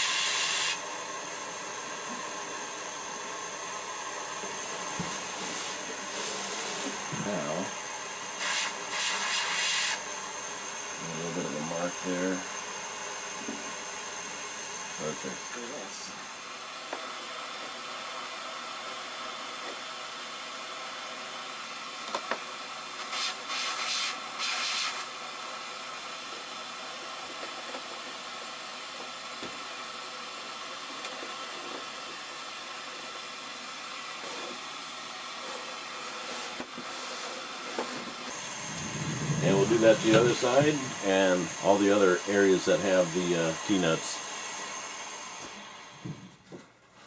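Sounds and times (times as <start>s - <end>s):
steady hissing noise: 38.3s - 44.2s
thin high whine: 38.3s - 44.2s.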